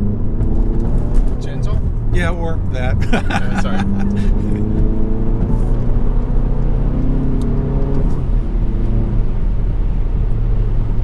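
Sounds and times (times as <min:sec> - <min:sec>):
car engine accelerating: 0:00.0 - 0:11.0.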